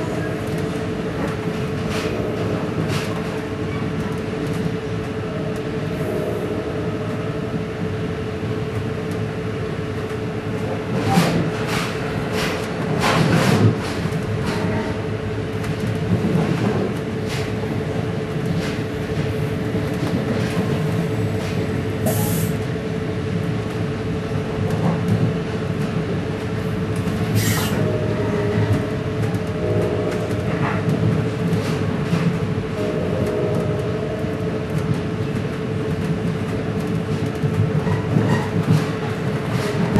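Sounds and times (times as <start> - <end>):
train running with electrical hum: 0.0 - 39.9
air hiss bursts: 22.1 - 22.6.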